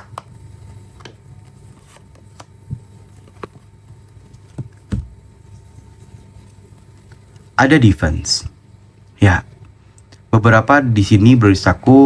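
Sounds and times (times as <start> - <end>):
cards clicking and tapping: 0.0 - 5.2
steady low hum: 0.0 - 12.0.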